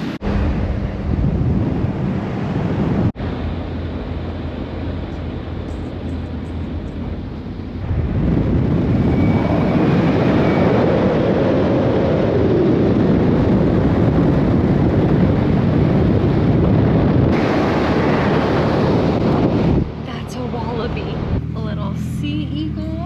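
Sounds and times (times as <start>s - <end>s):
vehicle rushing rumble: 0.0s - 23.0s
wind noise: 0.0s - 23.0s.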